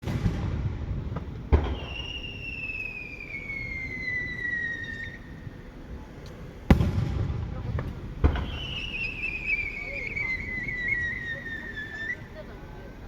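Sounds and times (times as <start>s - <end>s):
firework bang: 0.0s - 5.6s, 6.6s - 11.6s
firework whistle falling in pitch: 1.6s - 5.7s, 8.2s - 12.4s.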